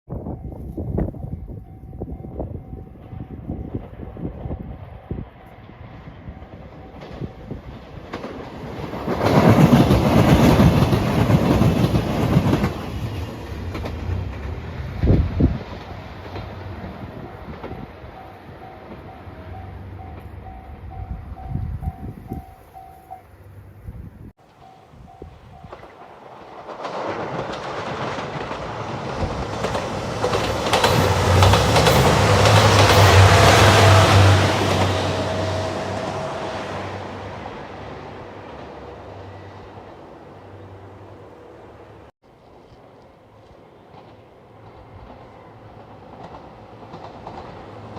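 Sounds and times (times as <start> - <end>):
train wheels clattering: 6.5 - 20.7, 25.5 - 35.8, 43.4 - 47.9.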